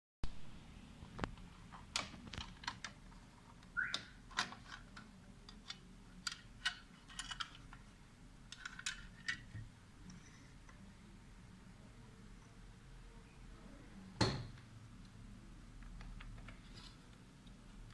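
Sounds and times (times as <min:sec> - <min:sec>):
hands handling computer parts: 0:01.2 - 0:07.9, 0:08.5 - 0:09.6.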